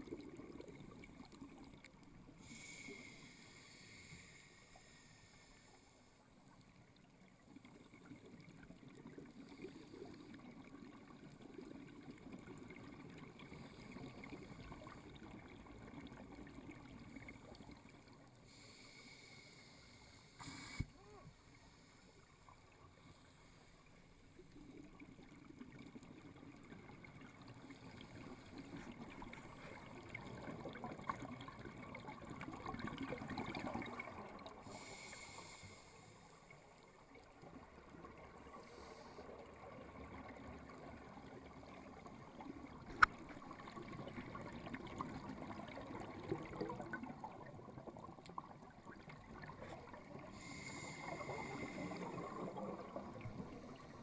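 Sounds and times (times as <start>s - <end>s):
underwater bubbling exhale: 0.0s - 5.8s, 23.8s - 54.0s
regulator air hiss: 2.4s - 6.1s, 18.5s - 22.2s, 34.7s - 36.6s, 50.4s - 52.2s.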